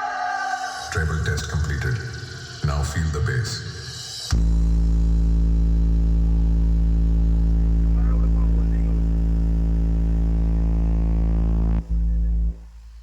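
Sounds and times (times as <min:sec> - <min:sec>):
deep bass test tone: 0:04.3 - 0:13.0.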